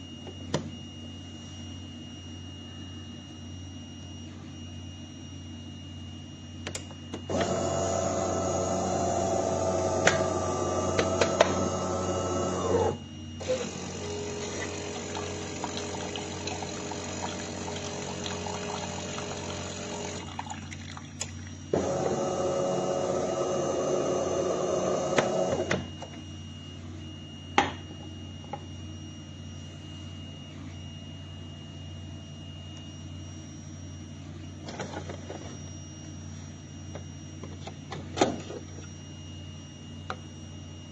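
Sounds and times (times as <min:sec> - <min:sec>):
steady machine hum: 0:00.0 - 0:40.9
espresso machine pump: 0:07.3 - 0:21.0, 0:21.7 - 0:25.8.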